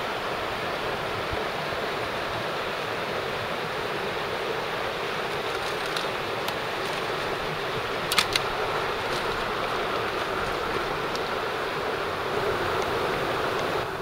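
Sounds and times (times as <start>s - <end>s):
stream rushing: 0.0s - 14.0s
sharp clicks: 8.1s - 8.5s.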